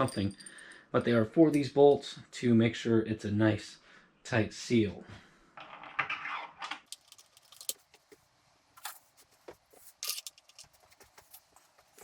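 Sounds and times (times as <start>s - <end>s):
metal bolts and washers clinking: 0.0s - 0.7s, 6.8s - 8.1s, 9.8s - 11.5s.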